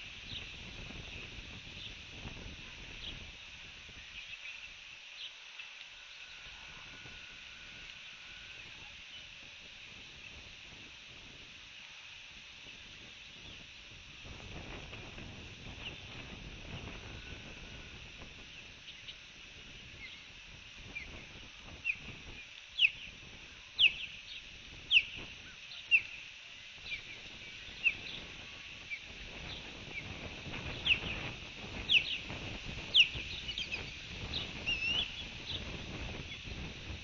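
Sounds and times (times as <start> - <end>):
osprey whistled chirps: 20.9 - 23.2, 23.8 - 26.2, 26.8 - 36.6.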